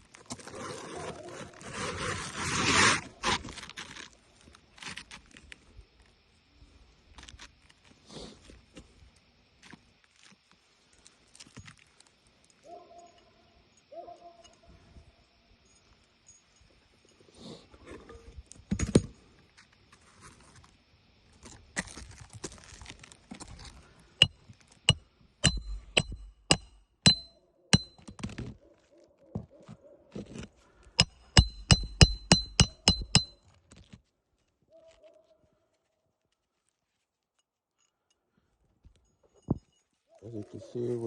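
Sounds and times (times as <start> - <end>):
hammer striking nails on metal: 25.4 - 28.2, 31.0 - 33.4.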